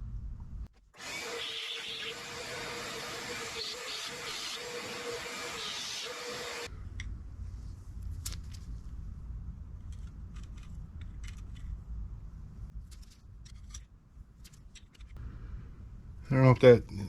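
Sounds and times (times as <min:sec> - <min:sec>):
low steady rumble: 0:00.0 - 0:00.7, 0:06.7 - 0:14.4, 0:15.1 - 0:17.0.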